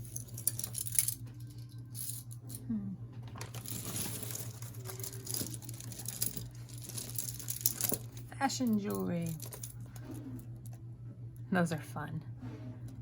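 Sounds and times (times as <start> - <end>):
metal jewelry clinking: 0.0 - 2.7, 3.4 - 10.5
low hum: 0.0 - 13.0.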